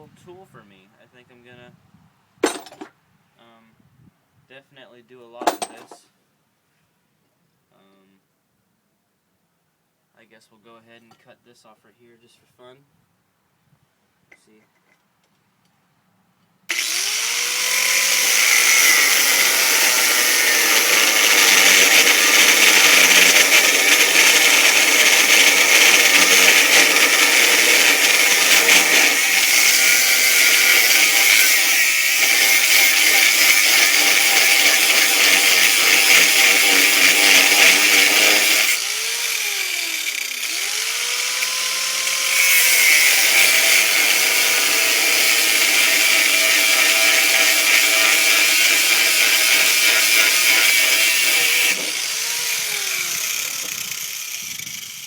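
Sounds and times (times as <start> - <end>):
angle grinder cutting steel: 16.7 - 55.0.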